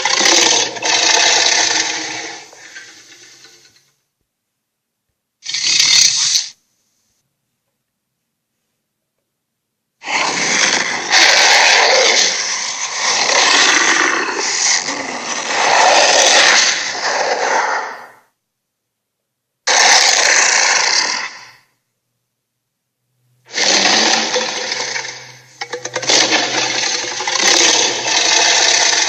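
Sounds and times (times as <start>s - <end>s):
monster roar: 0.0s - 3.5s, 10.0s - 18.2s, 19.7s - 21.6s, 23.5s - 29.0s.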